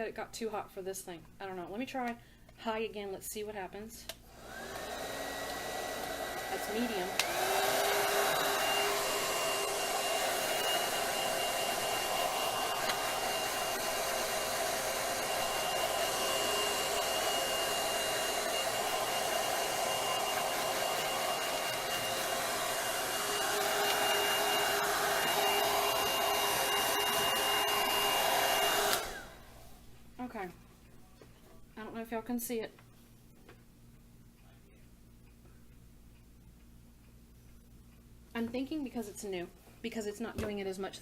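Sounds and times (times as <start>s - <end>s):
hair dryer blowing: 4.3s - 29.7s.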